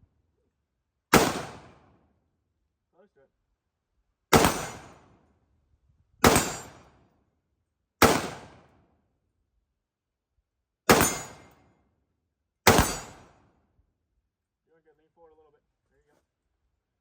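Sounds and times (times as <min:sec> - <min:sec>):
rifle shots: 0:01.1 - 0:01.9, 0:04.3 - 0:05.0, 0:06.2 - 0:06.9, 0:08.0 - 0:08.7, 0:10.9 - 0:11.6, 0:12.7 - 0:13.3.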